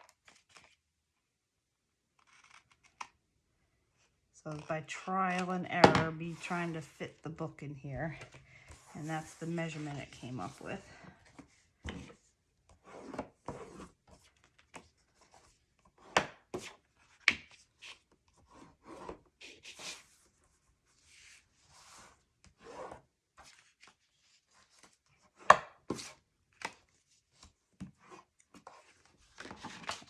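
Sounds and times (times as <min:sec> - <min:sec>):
paper rubbing and sliding: 0:08.2 - 0:10.9.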